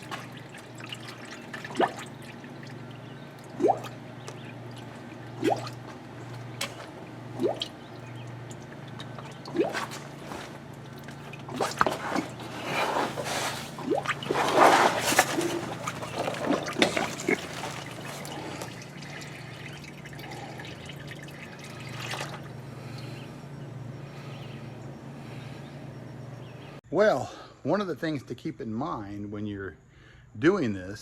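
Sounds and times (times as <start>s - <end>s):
oil gurgling into container: 0.0s - 23.2s
low steady hum: 0.0s - 30.3s.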